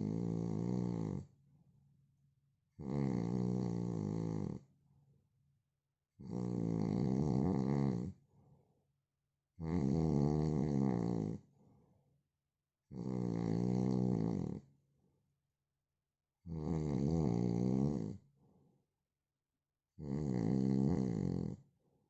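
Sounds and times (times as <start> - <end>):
man snoring loudly: 0.0 - 1.3, 2.8 - 4.6, 6.2 - 8.2, 9.6 - 11.4, 12.9 - 14.6, 16.5 - 18.2, 20.0 - 21.6.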